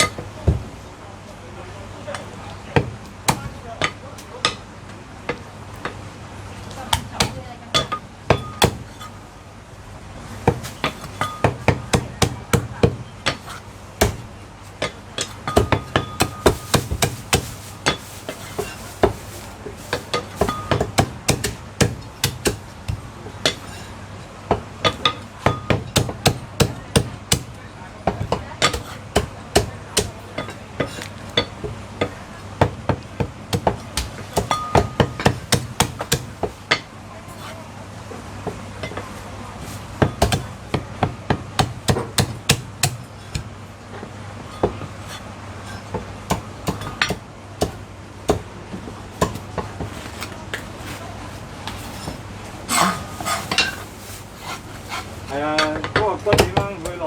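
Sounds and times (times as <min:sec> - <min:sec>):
cleaver chopping on wooden block: 0:02.8 - 0:04.0, 0:10.5 - 0:14.3, 0:20.1 - 0:23.6, 0:24.5 - 0:31.0, 0:31.6 - 0:36.8, 0:40.0 - 0:43.5, 0:45.9 - 0:48.4, 0:56.3 - 0:57.0.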